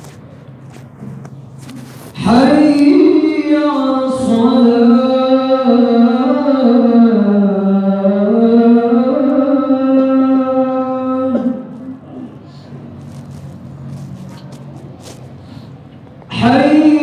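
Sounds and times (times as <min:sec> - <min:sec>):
man chanting call to prayer: 0:02.1 - 0:12.7, 0:16.3 - 0:17.0.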